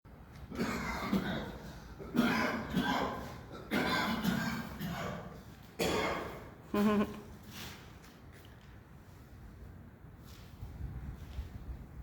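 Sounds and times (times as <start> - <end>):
cough-like call: 0.5 - 6.5.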